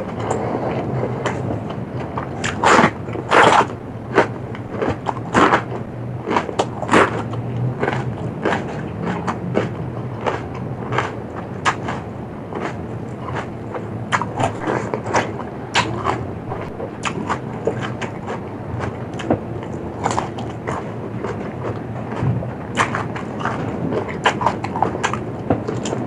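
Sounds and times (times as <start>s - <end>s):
faint low hum: 0.0s - 26.0s
wet chewing: 0.0s - 26.0s
crisp crunches of food: 2.2s - 12.0s.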